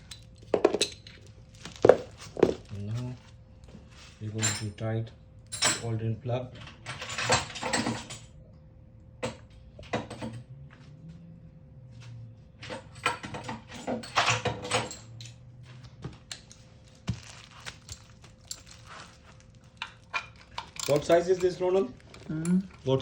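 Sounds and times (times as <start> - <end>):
hand tools clinking and knocking: 0.0 - 2.7, 4.3 - 4.8, 19.7 - 23.0.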